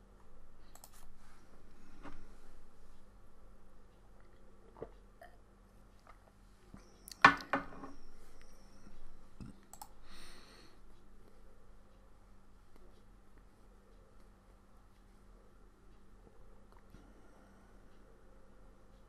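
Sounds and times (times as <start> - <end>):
computer mouse clicks: 0.6 - 1.1, 9.6 - 10.0.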